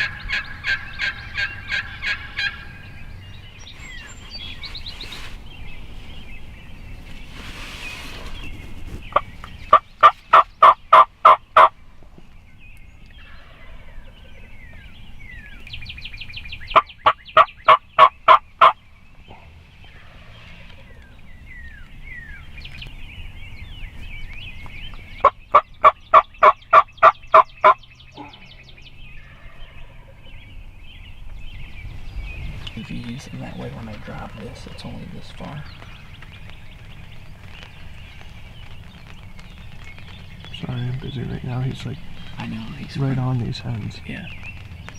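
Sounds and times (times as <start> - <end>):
turkey yelping: 0.0 - 2.8, 9.1 - 11.7, 16.7 - 18.8, 25.2 - 28.5
small birds chirping: 0.0 - 44.9.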